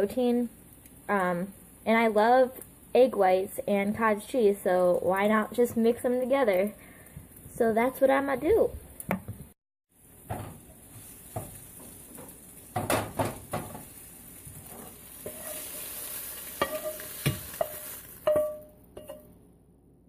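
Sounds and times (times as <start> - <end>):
egg sizzling in a frying pan: 0.0 - 8.2, 9.9 - 19.3.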